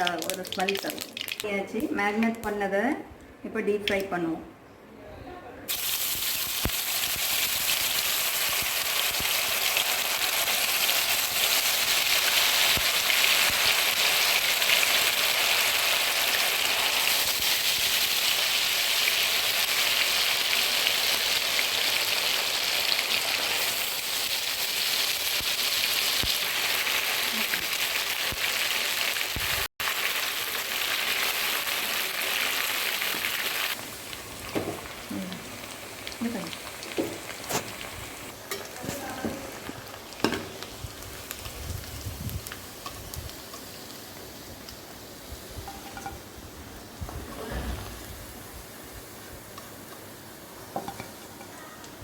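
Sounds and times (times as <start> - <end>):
chicken deep-frying in oil: 5.7 - 46.3.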